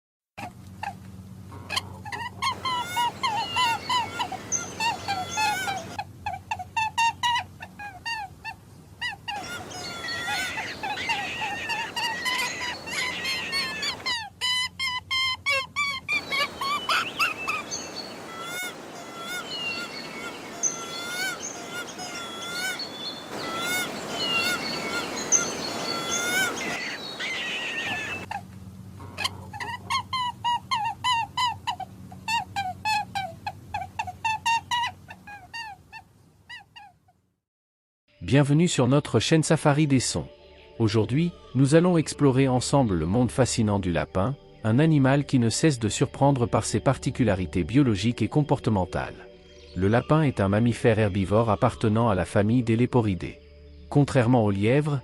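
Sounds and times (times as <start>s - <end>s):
rabbit squealing: 0.4s - 28.4s.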